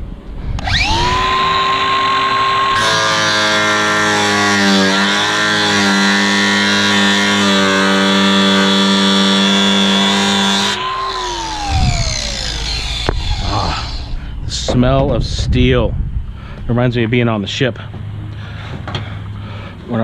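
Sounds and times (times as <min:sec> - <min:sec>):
angle grinder grinding steel: 0:00.6 - 0:14.2
angle grinder motor whine: 0:00.6 - 0:14.4.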